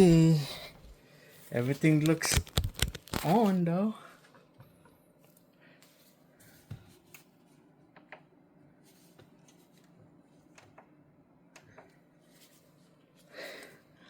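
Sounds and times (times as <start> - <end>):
low room hum: 0.0 - 14.0
small handling sounds: 0.8 - 3.6.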